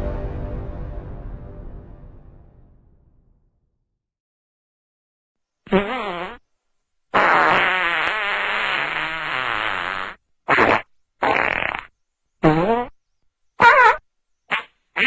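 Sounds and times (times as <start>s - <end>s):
fart sounds: 5.7s - 6.4s, 7.2s - 13.0s, 13.6s - 15.0s.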